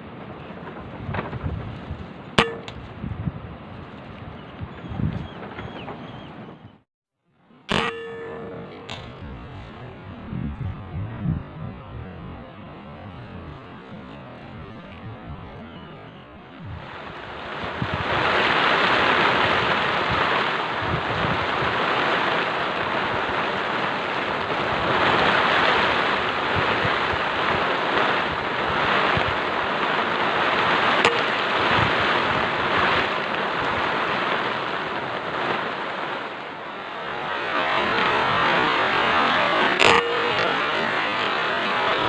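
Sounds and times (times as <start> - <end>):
heavy rain pouring: 16.8 - 42.0.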